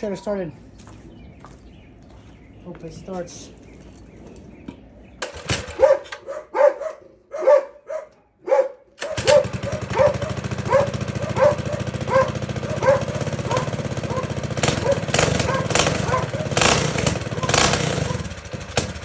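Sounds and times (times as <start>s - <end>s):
minibike engine starting: 5.0s - 6.3s, 9.0s - 19.0s
dog barking: 5.7s - 18.3s.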